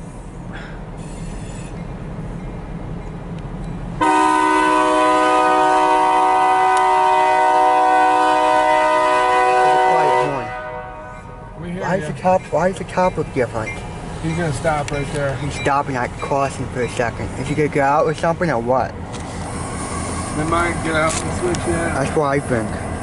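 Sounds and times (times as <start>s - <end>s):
diesel locomotive rumbling: 0.0s - 23.0s
locomotive air horn chord: 4.0s - 11.6s.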